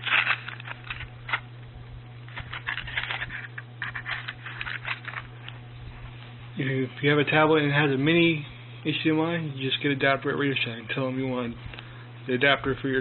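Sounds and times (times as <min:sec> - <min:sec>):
handling rustles and scrapes: 0:00.0 - 0:01.5, 0:02.3 - 0:06.7
steady low hum: 0:00.0 - 0:13.0.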